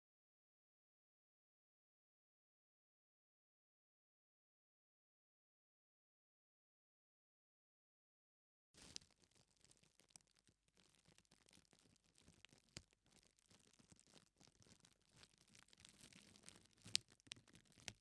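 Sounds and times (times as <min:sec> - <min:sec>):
faint scratching and crackling: 0:08.8 - 0:18.0.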